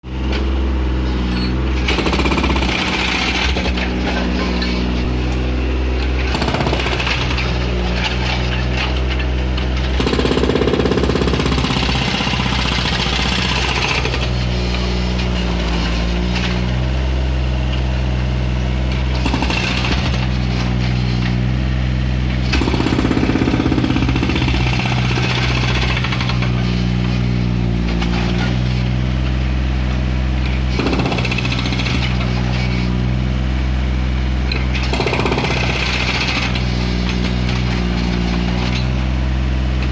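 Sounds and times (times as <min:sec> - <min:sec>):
diesel engine running: 0:00.1 - 0:39.9.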